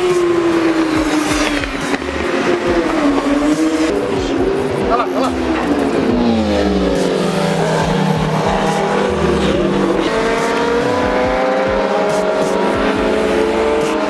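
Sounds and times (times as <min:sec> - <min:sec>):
racing motorbike engines revving: 0:00.0 - 0:14.0.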